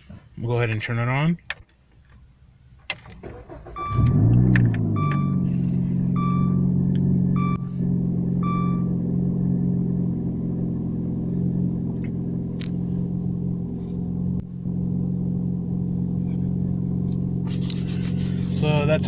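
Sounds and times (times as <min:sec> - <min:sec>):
car engine idling: 0:02.6 - 0:19.0
short electronic beep: 0:04.9 - 0:05.5, 0:06.1 - 0:06.7, 0:07.3 - 0:07.7, 0:08.4 - 0:08.9.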